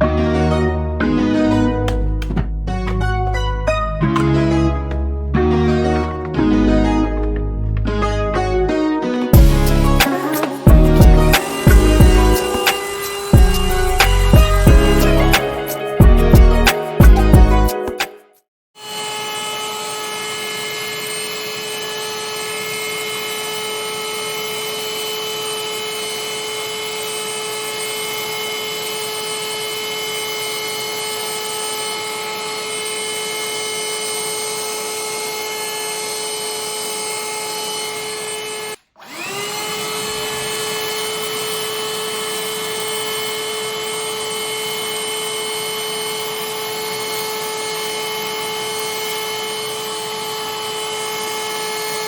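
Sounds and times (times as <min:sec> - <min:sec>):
handheld vacuum cleaner whine: 0:09.1 - 0:17.4, 0:18.8 - 0:52.0.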